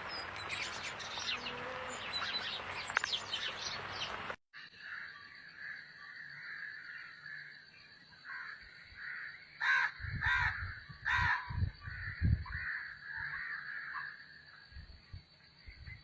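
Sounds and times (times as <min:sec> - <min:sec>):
birds chirping: 0:00.0 - 0:14.1
crow cawing: 0:08.2 - 0:14.2.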